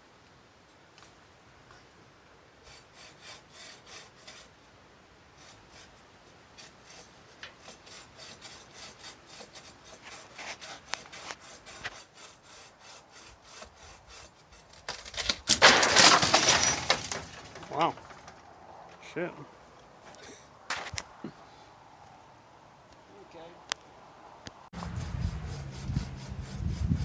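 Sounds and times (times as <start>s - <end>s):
handsaw cutting wood: 2.7s - 4.5s, 6.6s - 14.8s, 24.8s - 27.0s
tree limb cracking and crashing: 14.8s - 18.6s.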